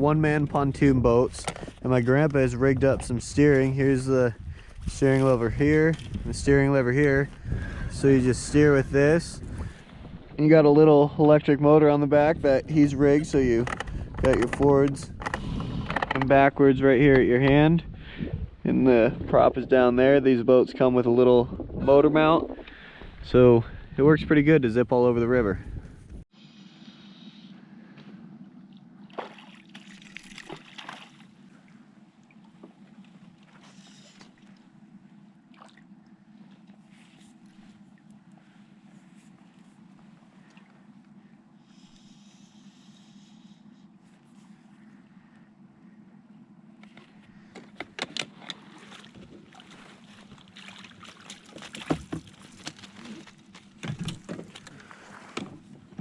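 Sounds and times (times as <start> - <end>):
steady low hum: 0.0 - 56.0
water sloshing and splashing: 28.6 - 41.0, 46.8 - 56.0.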